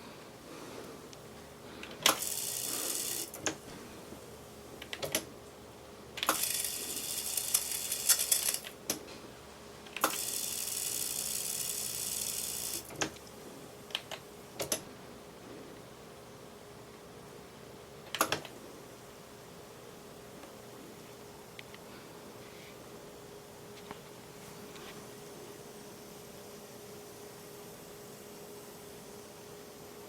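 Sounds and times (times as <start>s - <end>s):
tape winding whir: 6.2s - 8.8s.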